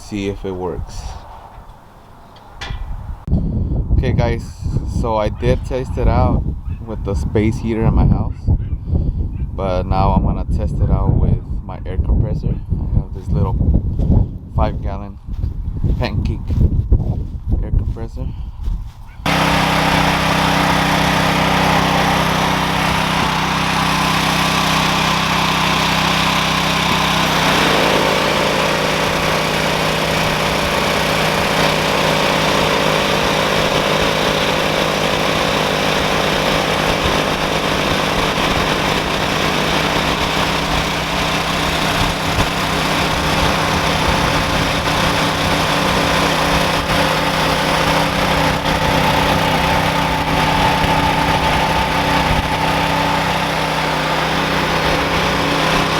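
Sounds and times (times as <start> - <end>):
air compressor running: 0.9 - 3.3, 19.2 - 55.9
portable generator running: 19.2 - 55.9.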